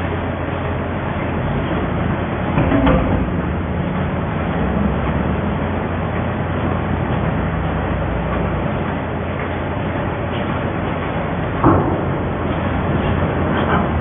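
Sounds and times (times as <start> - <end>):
baler machine hum: 0.0 - 14.0
machine knock: 2.6 - 3.4, 11.6 - 14.0.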